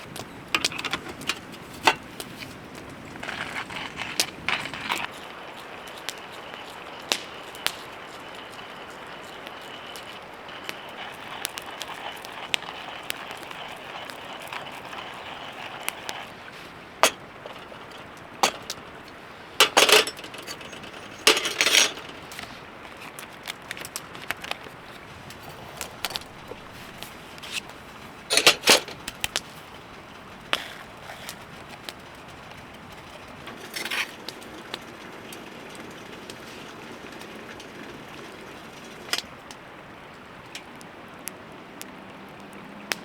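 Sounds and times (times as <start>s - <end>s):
metal cookware clinking: 0.5s - 2.1s, 15.9s - 22.6s, 27.4s - 29.1s.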